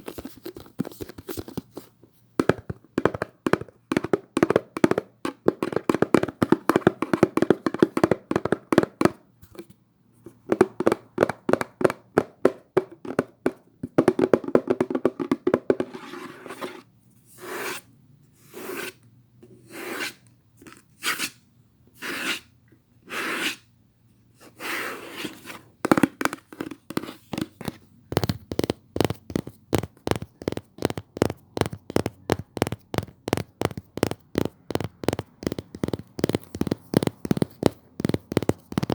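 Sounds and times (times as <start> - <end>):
scraping or rubbing strokes: 15.8 - 19.0
quick sharp tapping: 28.1 - 38.9.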